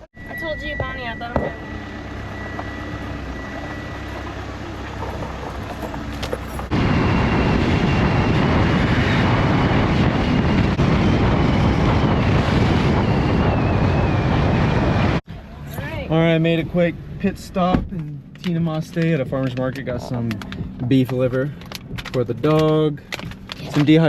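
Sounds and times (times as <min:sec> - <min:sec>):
road noise inside car: 0:00.0 - 0:08.1, 0:14.8 - 0:24.0
rushing wind noise: 0:02.7 - 0:15.2.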